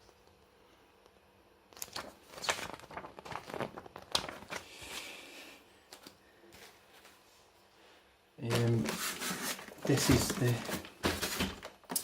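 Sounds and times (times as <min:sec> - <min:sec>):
packaging crinkling and rustling: 0:01.7 - 0:05.1, 0:08.4 - 0:12.0.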